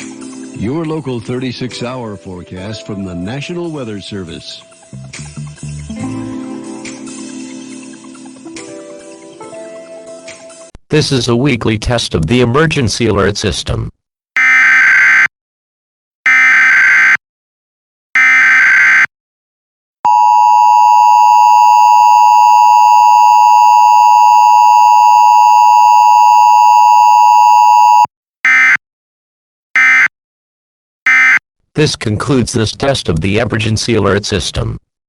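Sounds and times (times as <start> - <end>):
two-tone attention signal: 20.1 - 28.8.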